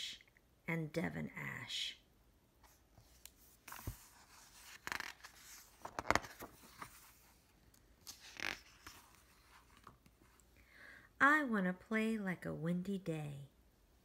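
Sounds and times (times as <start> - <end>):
book pages rustling and turning: 2.6 - 10.5.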